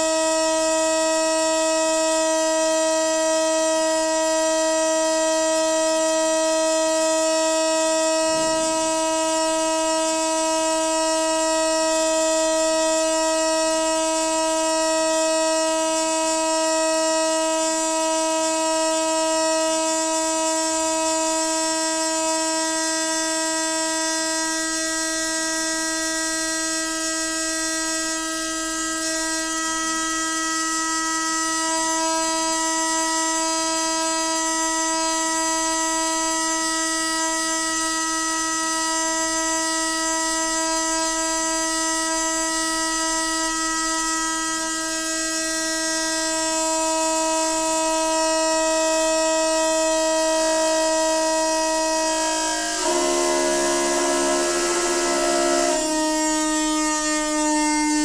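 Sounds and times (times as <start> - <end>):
water pipe humming with hiss: 28.2 - 58.0.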